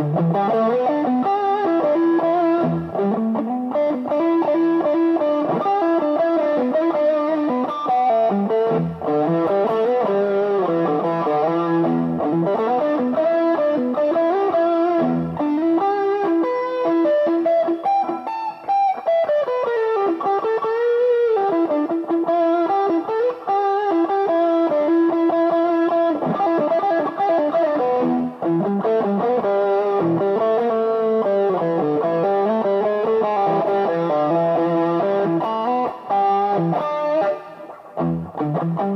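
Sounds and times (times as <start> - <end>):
distorted electric guitar: 0.0 - 38.9.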